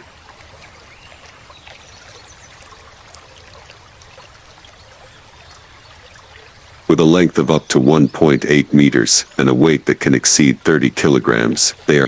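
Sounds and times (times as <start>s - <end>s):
small ticks and splashes: 0.0s - 6.9s
river water trickling and lapping: 0.0s - 12.0s.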